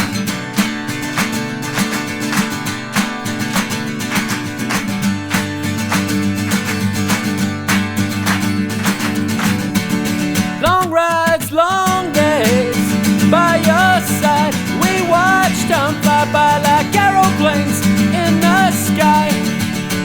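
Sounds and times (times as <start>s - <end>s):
acoustic guitar chords: 0.0s - 20.0s
person singing: 10.6s - 19.6s.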